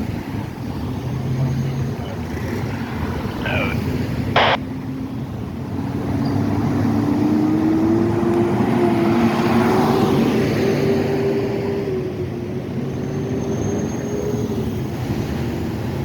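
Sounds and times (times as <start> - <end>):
low traffic rumble: 0.0 - 16.0
short sharp noise: 4.4 - 4.6.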